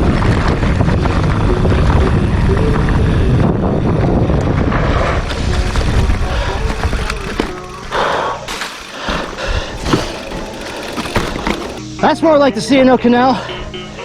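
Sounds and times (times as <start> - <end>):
bike tyres and frame rattling: 5.2 - 12.0.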